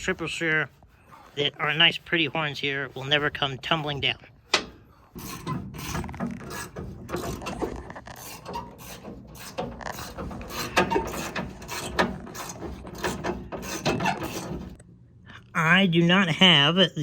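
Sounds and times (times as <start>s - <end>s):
scraping and rubbing: 0.0s - 14.8s
hand ratchet clicking: 4.5s - 14.6s.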